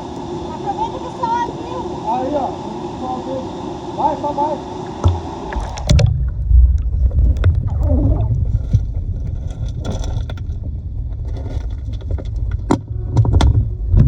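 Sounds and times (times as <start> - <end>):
muffled underwater rumble: 4.9 - 14.0.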